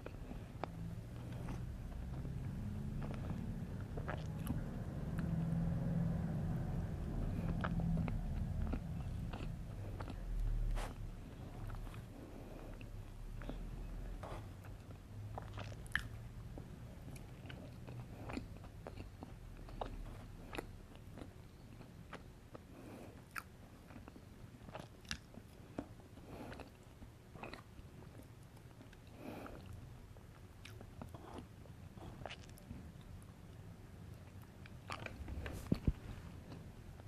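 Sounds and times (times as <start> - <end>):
person chewing cake: 0.0 - 37.0.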